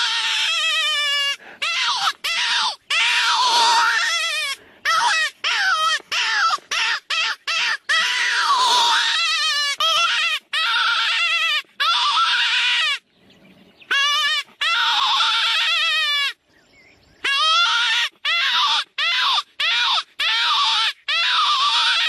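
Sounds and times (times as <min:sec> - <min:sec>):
jackal howling: 0:00.0 - 0:13.0, 0:13.9 - 0:16.4, 0:17.2 - 0:22.0.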